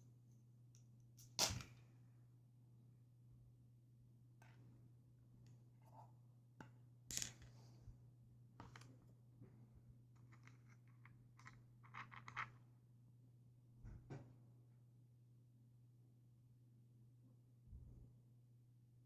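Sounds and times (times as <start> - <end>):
small clicks and scrapes: 10.2 - 12.6.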